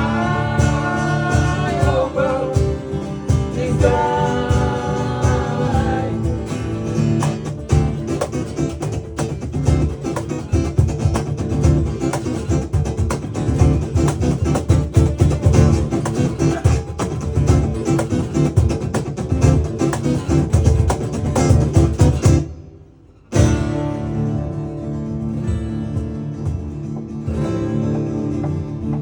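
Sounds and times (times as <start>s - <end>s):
steady drum beat: 0.0s - 22.5s
strummed guitar: 0.0s - 29.0s.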